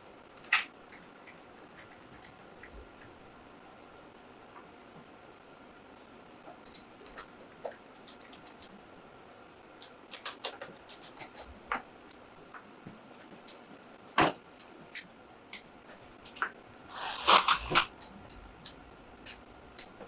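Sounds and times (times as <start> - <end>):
hand tools clicking and tapping: 9.8 - 11.9.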